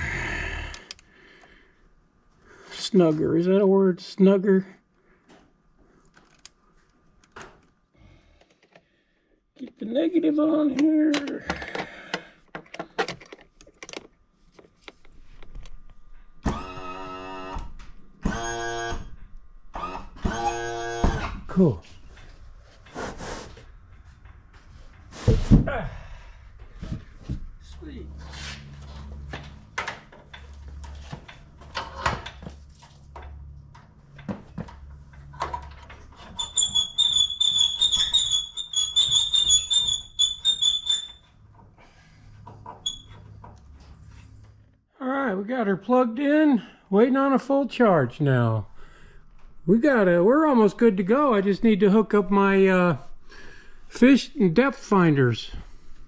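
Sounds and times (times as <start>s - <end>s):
handling clicks and knocks: 10.7s - 15.9s.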